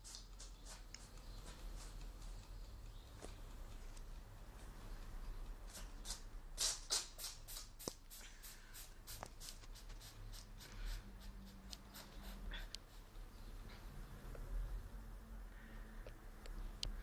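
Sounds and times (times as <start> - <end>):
cat sneezing: 6.6 - 7.5.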